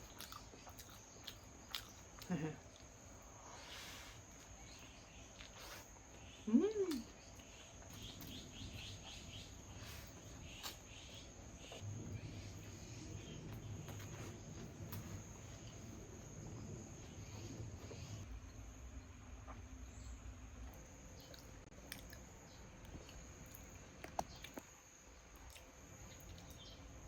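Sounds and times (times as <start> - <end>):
insects chirring: 0.0 - 27.0
soft low rumble: 11.6 - 21.7.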